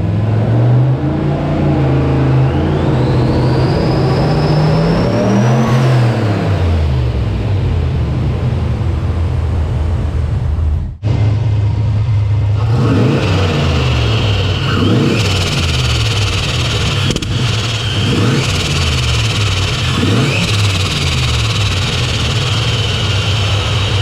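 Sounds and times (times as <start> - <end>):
car engine revving: 0.0 - 8.2, 11.0 - 24.0
high thin whine: 11.0 - 24.0.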